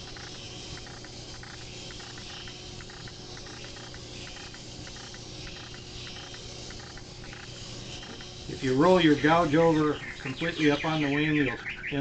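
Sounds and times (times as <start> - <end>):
light regular ticking: 0.0 - 11.0
sharpening machine humming: 0.0 - 11.6.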